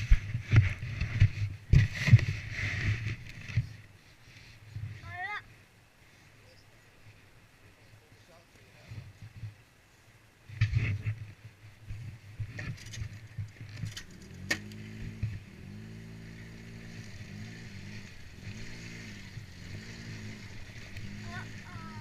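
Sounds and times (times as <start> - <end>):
atv engine running: 0.0 - 3.9, 10.6 - 22.0.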